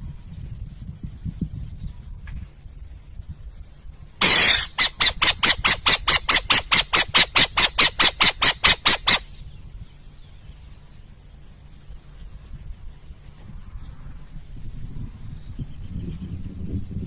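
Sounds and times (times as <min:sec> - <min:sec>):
owl screeching: 0:04.2 - 0:09.4
owl short harsh calls: 0:04.2 - 0:09.4.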